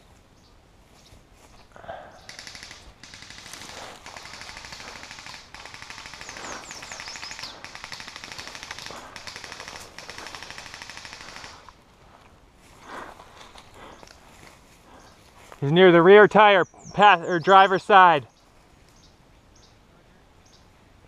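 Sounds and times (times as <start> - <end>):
airsoft guns firing full-auto: 2.3 - 11.8.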